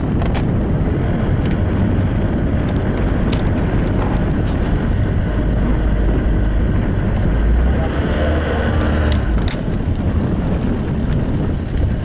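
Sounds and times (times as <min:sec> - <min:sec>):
outboard motor rumbling: 0:00.0 - 0:12.0
wind buffeting microphone: 0:00.0 - 0:12.0.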